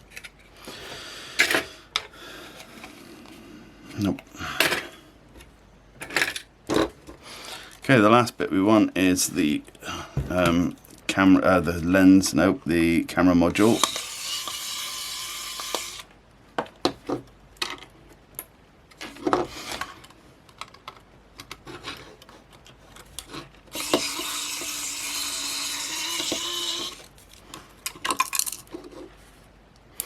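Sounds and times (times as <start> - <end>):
tools and plastic parts clicking: 13.7 - 14.9, 16.8 - 25.2.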